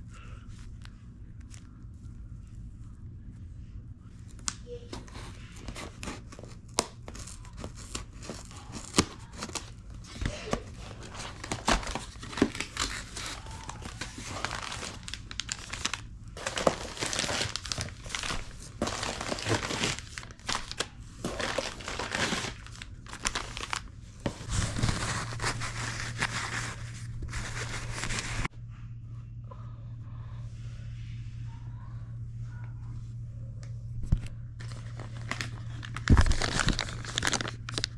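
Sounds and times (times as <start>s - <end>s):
packaging crinkling and rustling: 4.3s - 28.5s, 34.2s - 37.9s
packaging tearing: 5.0s - 28.5s, 34.6s - 37.9s.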